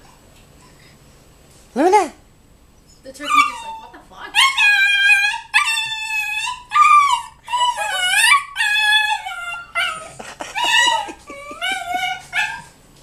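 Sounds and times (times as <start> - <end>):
puppy yipping: 2.9 - 12.8
puppy whining howls: 3.2 - 12.8.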